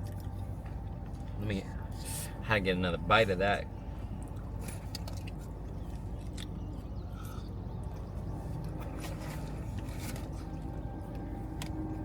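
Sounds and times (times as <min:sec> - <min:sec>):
person chewing: 0:00.0 - 0:01.3, 0:04.1 - 0:11.8
low hum inside a car: 0:00.0 - 0:12.0.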